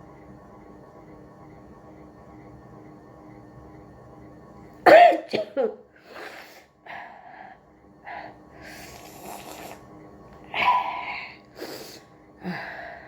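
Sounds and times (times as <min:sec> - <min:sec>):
person sniffing and snorting: 0:08.6 - 0:09.8.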